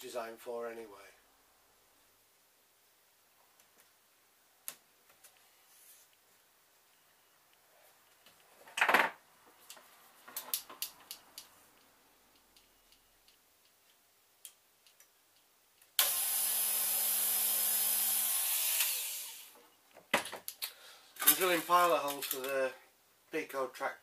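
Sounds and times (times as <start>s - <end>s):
electric drill boring: 16.0s - 19.6s.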